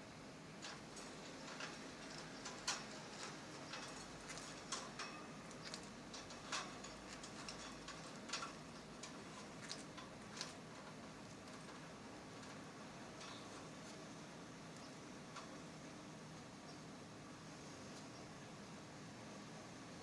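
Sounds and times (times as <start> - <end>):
birds tapping and clicking: 0.7 - 14.0.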